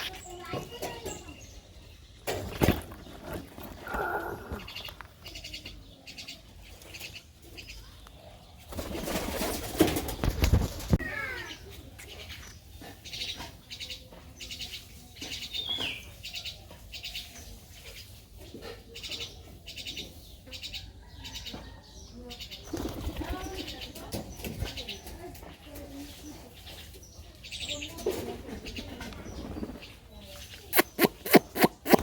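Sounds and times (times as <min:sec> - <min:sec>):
birds flapping wings: 0:08.7 - 0:11.0, 0:22.7 - 0:24.7.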